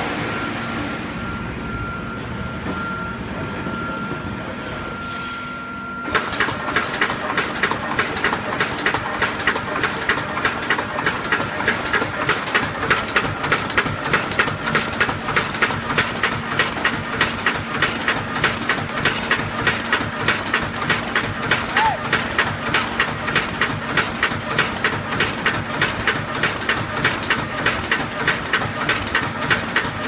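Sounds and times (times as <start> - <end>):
steady machine whine: 0.0 - 30.0
welding machine clacking: 6.1 - 30.0.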